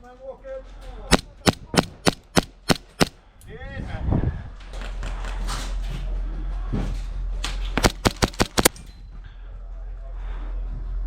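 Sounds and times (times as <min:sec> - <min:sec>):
airsoft pistol shots: 0:01.1 - 0:03.2, 0:07.8 - 0:08.8
rustling movement: 0:07.8 - 0:08.8.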